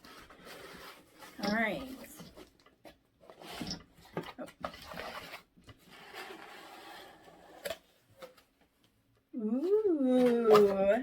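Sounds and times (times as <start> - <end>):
paper and cardboard rustling: 0.0 - 8.5.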